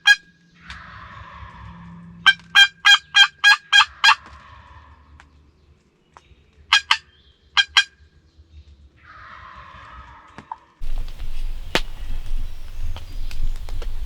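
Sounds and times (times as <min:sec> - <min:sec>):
wild turkey yelps: 0:02.3 - 0:04.8, 0:10.8 - 0:14.0.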